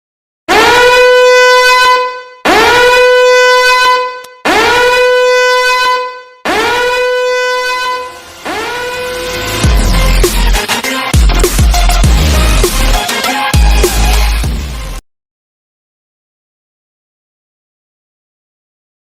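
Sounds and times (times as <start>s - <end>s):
horn-like blasts: 0.5s - 14.3s
electronic dance music: 6.5s - 15.0s.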